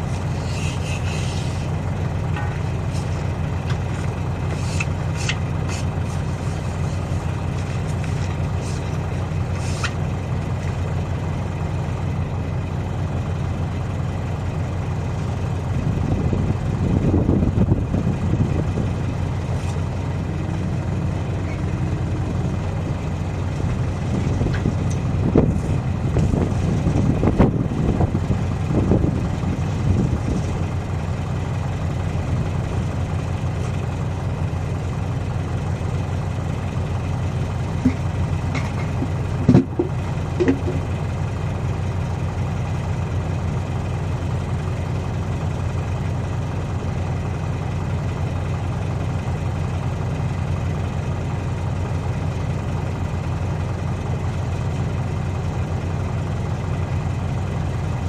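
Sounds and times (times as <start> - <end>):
engine knocks: 0.0 - 12.1, 15.4 - 42.9
diesel engine idling: 0.0 - 58.0.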